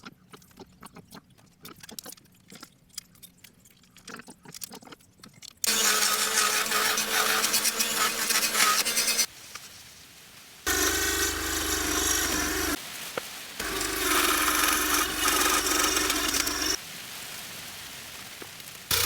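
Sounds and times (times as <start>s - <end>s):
power tool running on plywood: 5.7s - 9.3s, 10.7s - 12.8s, 13.6s - 16.8s.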